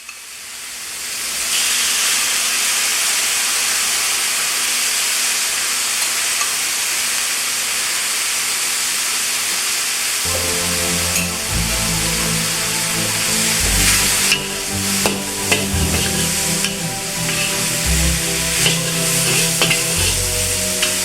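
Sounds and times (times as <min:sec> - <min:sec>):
stir-fry sizzling in a pan: 0:10.3 - 0:21.0.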